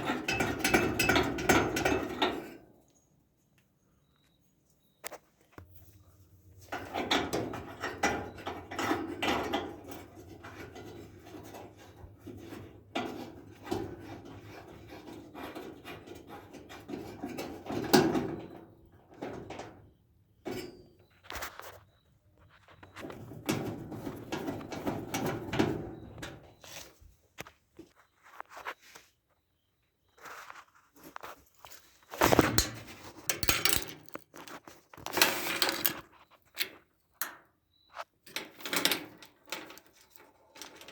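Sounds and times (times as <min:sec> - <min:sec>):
rubbing and scraping in dryer: 0:09.7 - 0:18.0.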